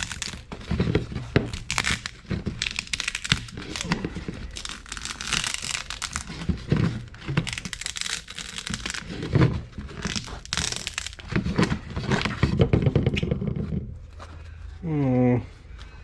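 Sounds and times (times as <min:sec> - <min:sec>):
plastic film crinkling and tearing: 0:00.0 - 0:12.6.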